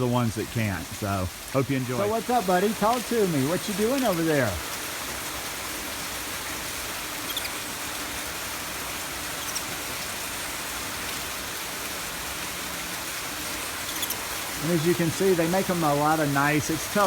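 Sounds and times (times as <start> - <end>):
steady background hiss: 0.0 - 17.0
faint high chirps: 7.2 - 7.6, 13.8 - 14.2.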